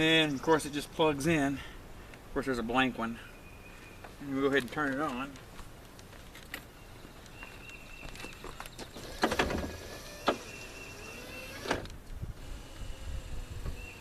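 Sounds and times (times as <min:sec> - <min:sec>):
power window motor running: 0:09.0 - 0:14.0.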